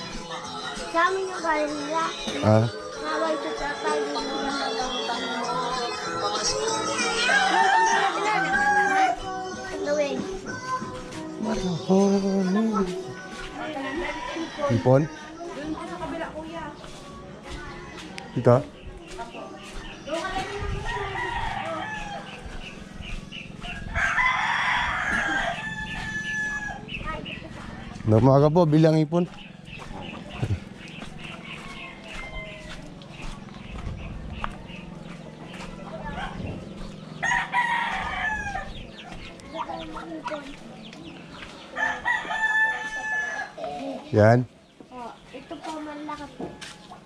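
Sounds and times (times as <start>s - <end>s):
chickens clucking and chirping: 0.0s - 4.6s, 5.6s - 47.0s
rooster crowing: 7.0s - 9.4s, 13.6s - 15.2s, 20.8s - 22.6s, 23.6s - 28.0s, 31.0s - 33.4s, 35.8s - 38.8s, 41.7s - 43.7s.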